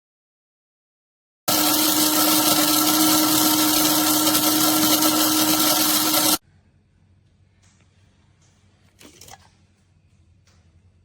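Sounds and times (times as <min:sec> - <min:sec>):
coffee grinder motor running: 0:01.5 - 0:06.4.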